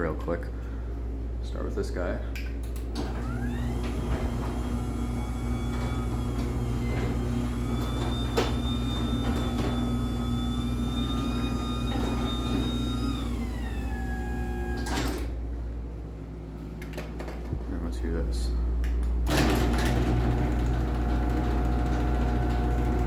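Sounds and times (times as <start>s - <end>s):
garage door opener motor whine: 2.8s - 15.5s, 19.1s - 23.0s
door stopping clunk: 3.0s - 14.0s.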